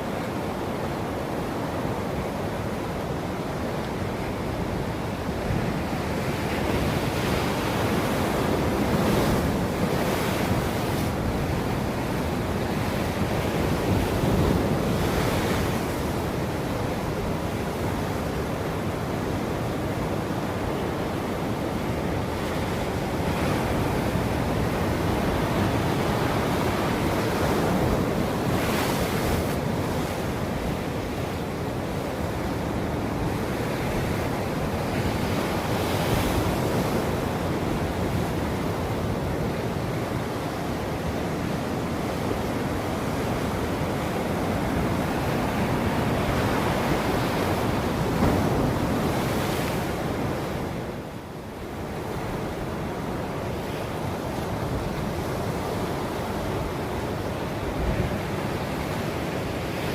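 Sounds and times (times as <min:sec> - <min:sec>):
wind noise on microphone: 0:00.0 - 0:59.9
waves breaking: 0:21.3 - 0:59.9.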